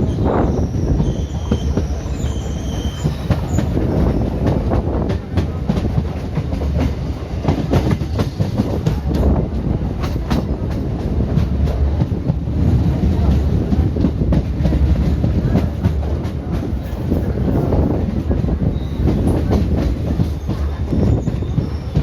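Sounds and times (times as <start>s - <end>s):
high wheel squeal: 0.0s - 4.4s, 20.3s - 22.0s
train rumbling on rails: 0.0s - 22.0s.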